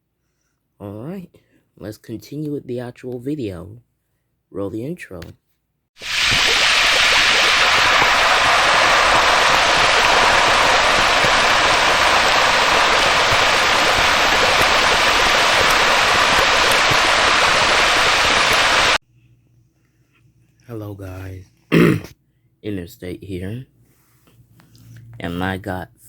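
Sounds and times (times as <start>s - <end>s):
loud steady rushing noise: 6.0s - 19.0s.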